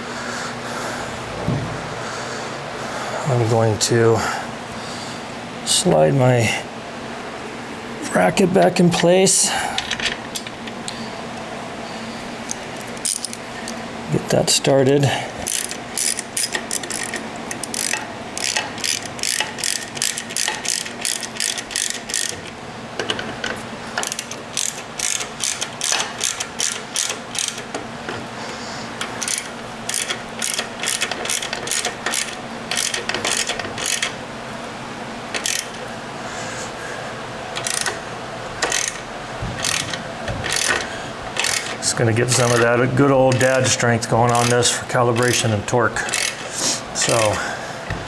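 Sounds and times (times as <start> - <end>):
socket ratchet clicking: 15.5 - 27.8, 29.0 - 34.2, 35.3 - 35.8, 37.6 - 38.0, 38.6 - 39.0, 39.6 - 41.8, 46.1 - 46.4.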